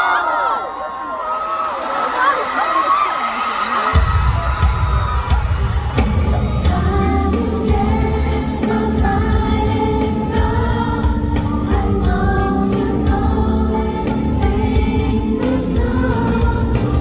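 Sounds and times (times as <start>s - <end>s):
pop song over sound system: 3.8s - 17.0s.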